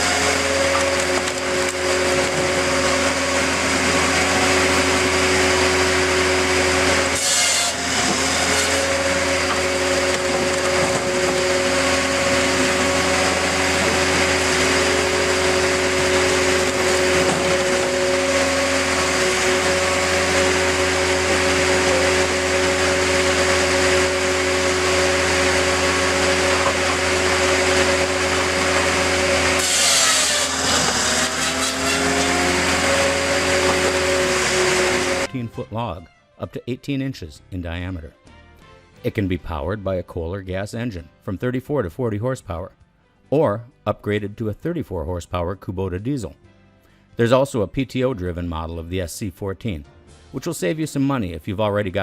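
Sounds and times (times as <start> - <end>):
engine and hydraulics drone: 0.0 - 35.3
saw cutting logs: 0.0 - 35.4.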